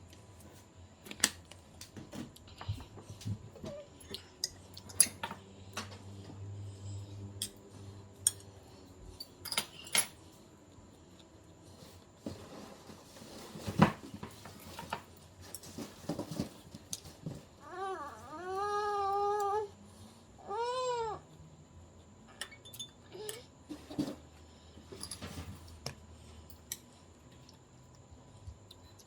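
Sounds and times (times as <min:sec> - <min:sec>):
utensils clinking against dishes: 0:04.0 - 0:05.4, 0:08.2 - 0:08.5, 0:09.2 - 0:10.2, 0:22.4 - 0:23.5.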